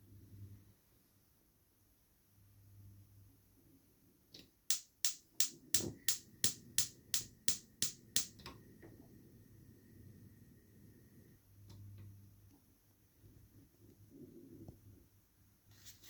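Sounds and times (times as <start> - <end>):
spark igniter clicking: 4.7 - 8.4.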